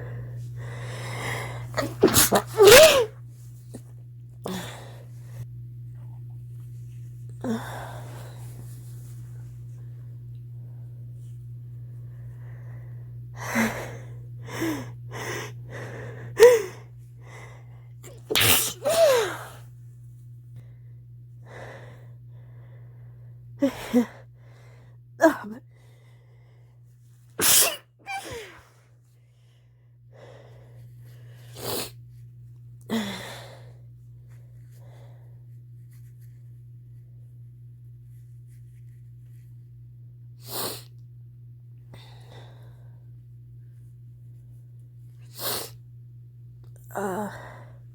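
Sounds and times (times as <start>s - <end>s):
person stifling sneezes: 1.7s - 3.1s, 18.0s - 19.6s, 27.4s - 28.6s.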